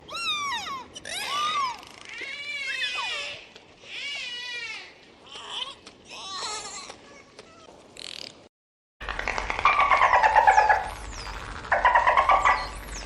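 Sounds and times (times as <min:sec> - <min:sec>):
marine mammal high-pitched cries: 0:00.0 - 0:04.8.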